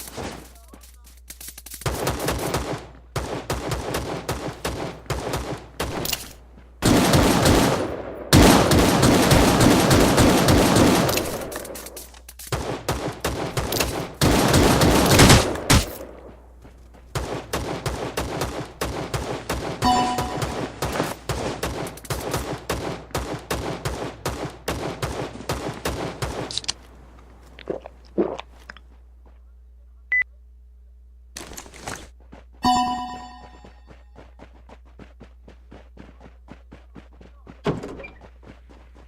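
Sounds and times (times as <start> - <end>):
rapid sharp bangs: 17.1 - 26.5
short beep: 32.6 - 33.9.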